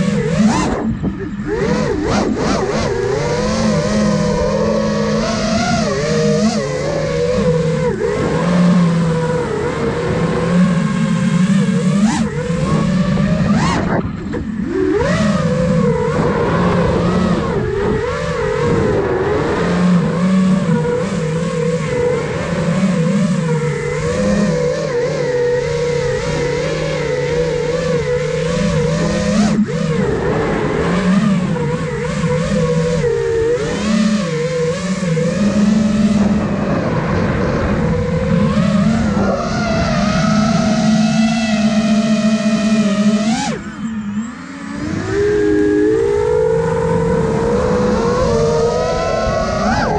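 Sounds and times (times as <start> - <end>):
drone motors and propellers whining: 0.0 - 49.9
rushing wind: 0.0 - 49.9.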